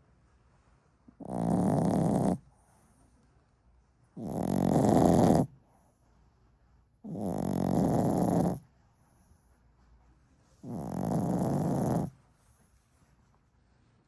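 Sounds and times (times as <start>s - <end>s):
dog snoring: 1.2s - 2.9s, 4.2s - 5.6s, 7.0s - 8.7s, 10.6s - 12.2s.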